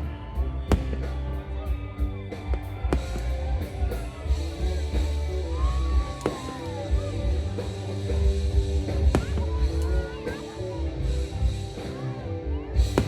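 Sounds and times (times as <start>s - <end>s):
loud music with heavy bass: 0.0s - 13.0s
firework bangs: 0.7s - 1.3s, 8.9s - 9.9s.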